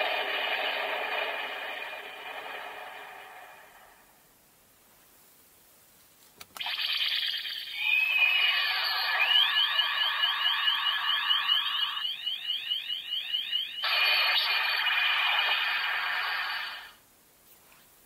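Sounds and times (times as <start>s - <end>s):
electronic rising chirps: 0.0s - 4.0s, 6.6s - 17.0s
electronic rushing noise: 0.0s - 4.2s, 13.8s - 17.0s.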